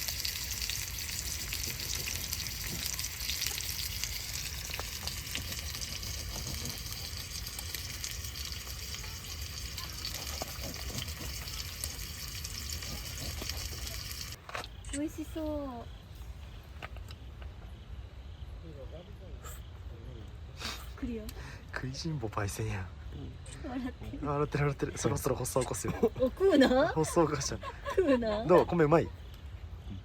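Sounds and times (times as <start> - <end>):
beef sizzling: 0.0 - 14.4.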